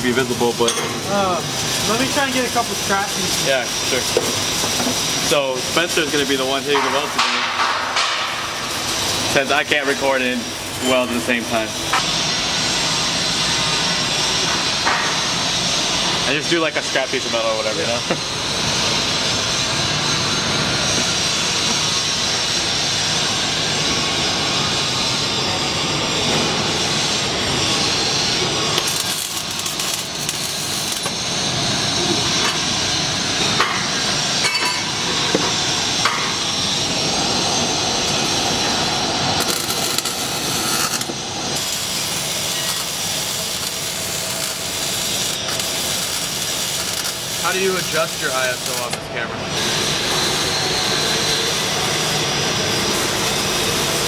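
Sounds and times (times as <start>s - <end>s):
welding arc crackling sizzle: 0.0s - 54.0s.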